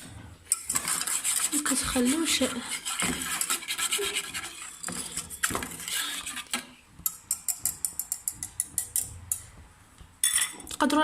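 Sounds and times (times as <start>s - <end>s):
utensil scraping a pot: 0.0s - 9.6s
utensil clicking against pot: 6.5s - 9.4s.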